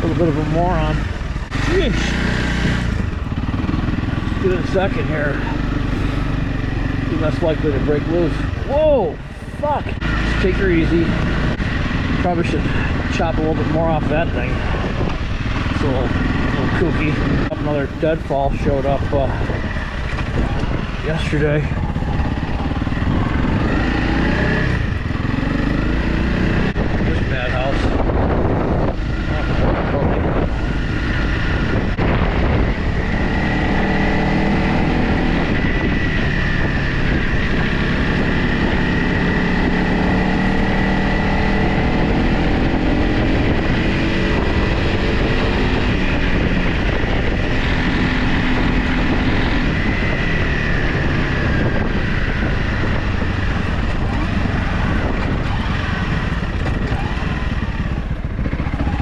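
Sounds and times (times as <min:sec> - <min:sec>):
dirt bike engine running: 0:00.0 - 0:59.0
wind rushing over microphone: 0:00.0 - 0:59.0.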